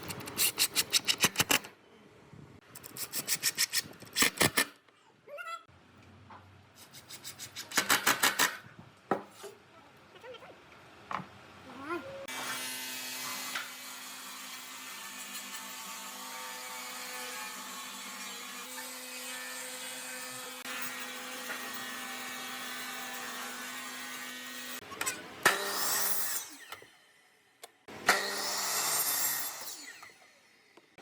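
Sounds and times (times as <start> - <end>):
rough cutting or sanding noise: 2.8 - 4.6.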